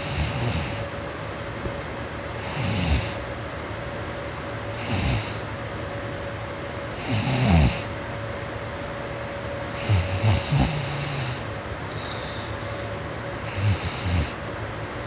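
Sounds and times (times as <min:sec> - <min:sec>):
man snoring: 0:00.0 - 0:00.9, 0:02.4 - 0:03.3, 0:04.7 - 0:05.5, 0:06.9 - 0:07.9, 0:09.7 - 0:11.5, 0:13.4 - 0:14.4.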